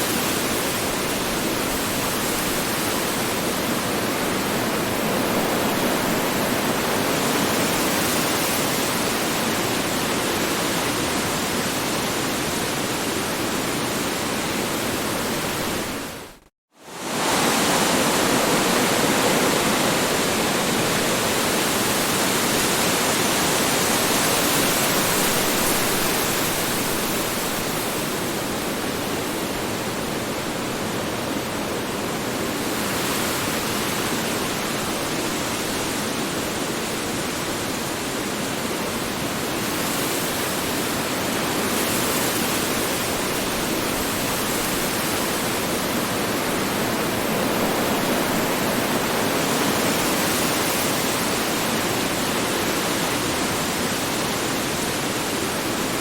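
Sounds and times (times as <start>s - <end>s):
strong wind blowing: 38.6s - 56.0s.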